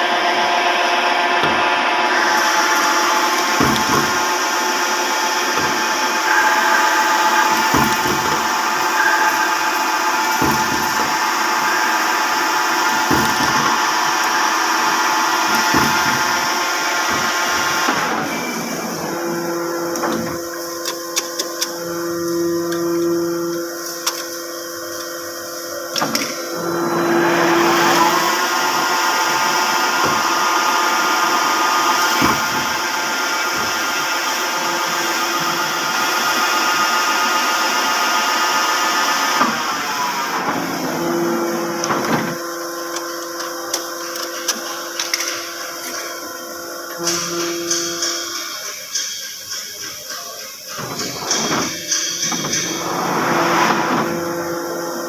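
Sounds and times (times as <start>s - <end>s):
metal lathe humming: 0.0s - 38.0s.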